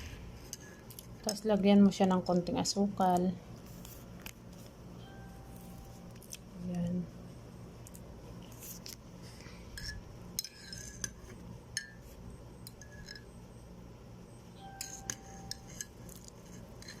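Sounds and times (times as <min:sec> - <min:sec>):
spoon clinking in a glass: 0:14.6 - 0:17.0.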